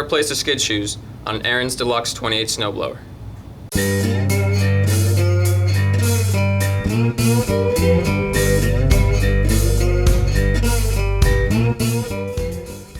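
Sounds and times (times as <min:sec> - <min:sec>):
bluesy guitar music with beat: 0:03.7 - 0:12.9.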